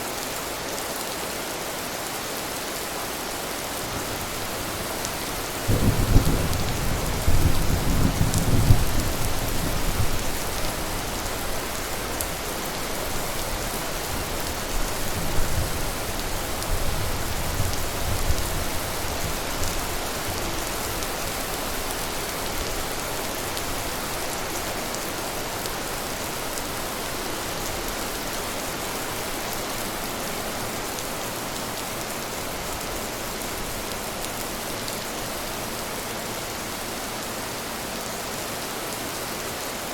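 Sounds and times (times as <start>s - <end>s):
rain falling: 0.0s - 39.9s
thunder rumbling: 3.9s - 11.2s.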